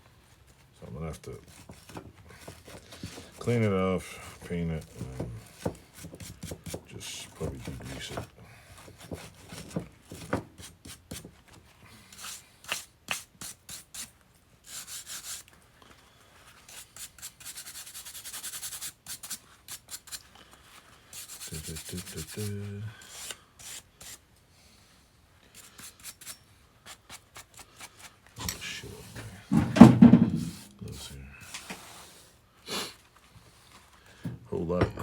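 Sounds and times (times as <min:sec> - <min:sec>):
metal knocks: 0:29.5 - 0:30.6, 0:34.3 - 0:35.0.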